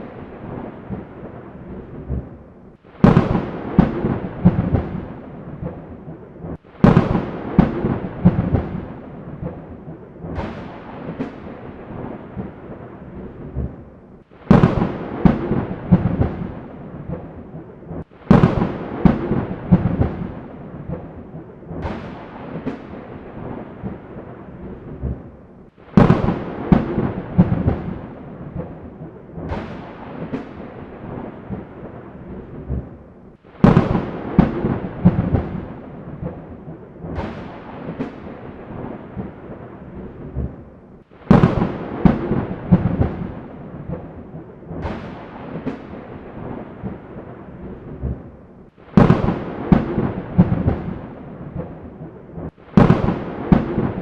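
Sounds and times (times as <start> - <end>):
thunderclaps rumbling: 0.0 - 54.0.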